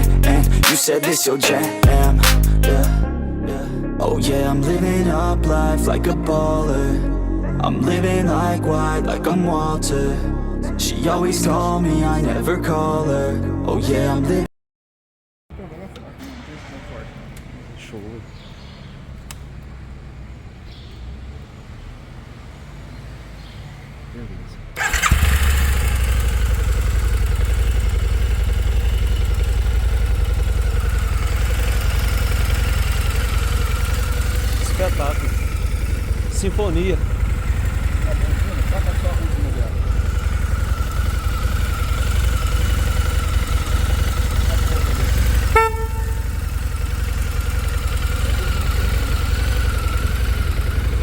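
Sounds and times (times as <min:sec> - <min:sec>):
motorcycle engine idling: 0:00.0 - 0:00.7, 0:01.8 - 0:03.0, 0:15.5 - 0:51.0
horn blast: 0:43.8 - 0:47.3.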